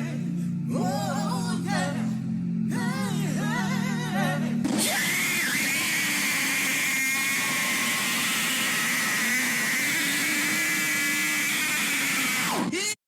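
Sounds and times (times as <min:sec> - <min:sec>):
steady mechanical whir: 0:03.7 - 0:12.8.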